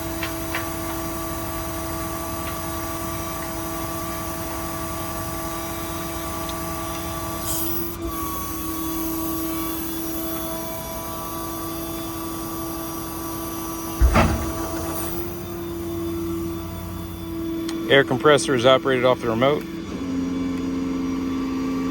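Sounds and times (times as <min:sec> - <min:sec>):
truck engine and hydraulics whining: 0:14.0 - 0:15.5
loud clunk: 0:14.0 - 0:15.6.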